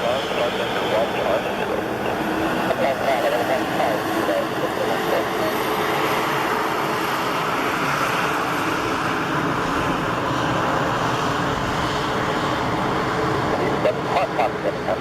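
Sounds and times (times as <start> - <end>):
turboprop engines drone: 0.0 - 15.0.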